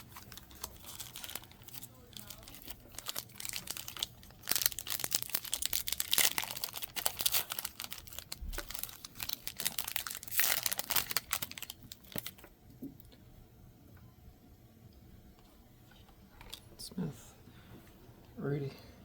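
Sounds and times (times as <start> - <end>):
foil wrapper tearing and crinkling: 0.0 - 12.5.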